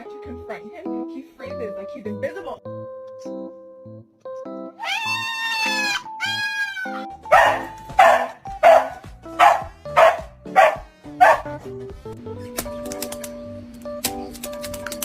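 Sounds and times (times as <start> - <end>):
light background music: 0.0 - 15.0
dog barking: 7.3 - 11.6.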